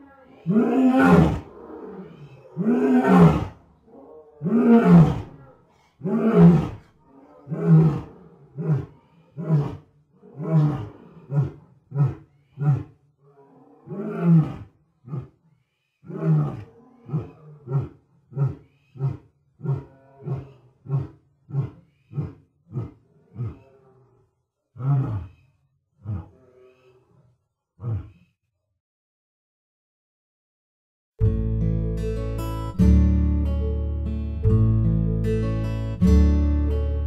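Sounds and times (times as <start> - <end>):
lion roaring and grunting: 0.1 - 15.3, 16.0 - 24.2, 24.8 - 25.4, 26.0 - 28.3.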